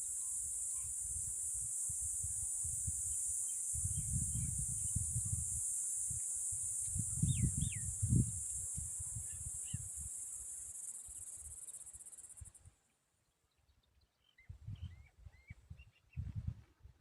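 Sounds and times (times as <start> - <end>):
insect trill: 0.0 - 12.6.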